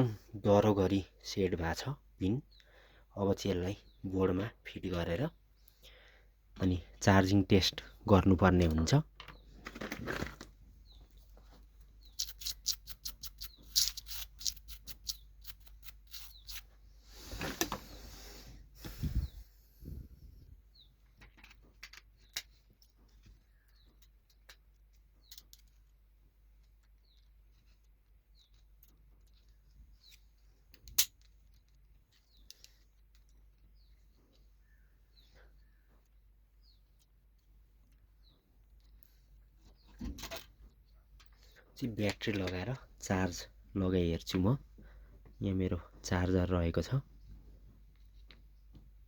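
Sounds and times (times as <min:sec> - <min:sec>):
small parts clicking and tapping: 0:12.0 - 0:16.7, 0:21.0 - 0:34.5, 0:40.1 - 0:42.7.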